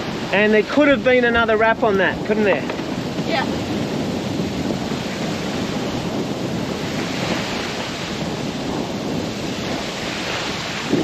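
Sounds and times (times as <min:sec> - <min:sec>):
water rushing along hull: 0:00.0 - 0:11.0
wind buffeting microphone: 0:00.0 - 0:11.0.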